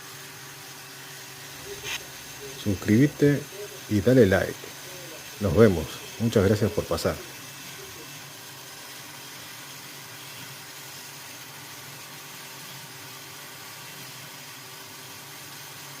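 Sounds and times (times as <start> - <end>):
faint hum: 1.3 - 8.3.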